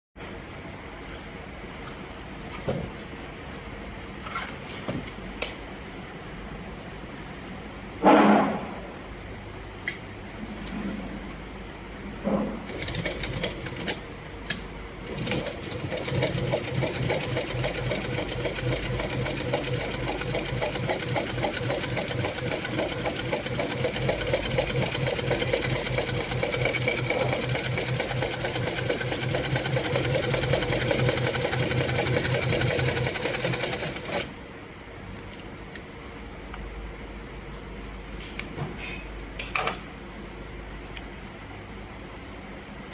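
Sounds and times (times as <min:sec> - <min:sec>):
sewing machine running: 0:12.7 - 0:34.3.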